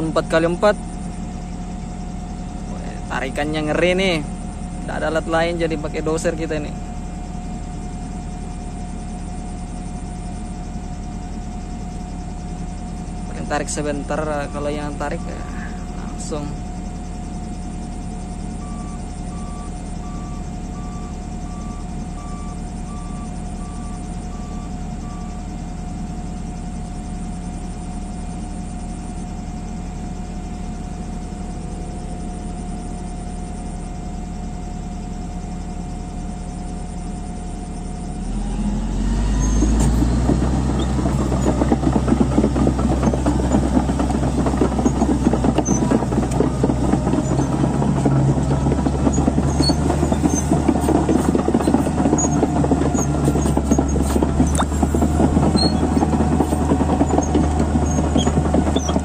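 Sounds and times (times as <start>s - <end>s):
bulldozer diesel engine: 0.0s - 59.0s
dense rattling: 39.7s - 59.0s.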